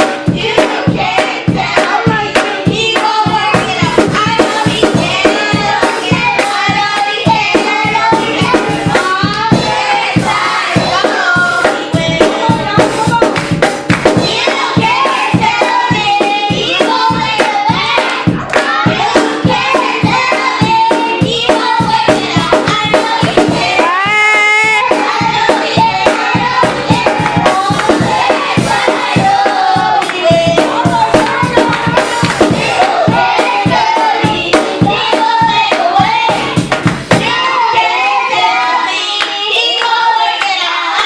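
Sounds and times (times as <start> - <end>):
hand claps and percussion: 0.0 - 37.8, 39.1 - 41.0
children's choir singing: 0.0 - 41.0.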